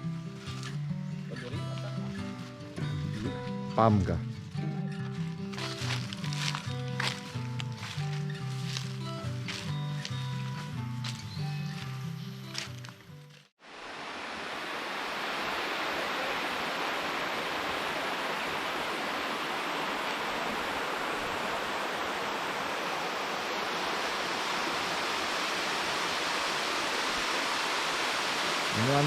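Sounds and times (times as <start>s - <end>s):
background music: 0.0s - 13.2s
waterfall rushing: 13.6s - 29.0s.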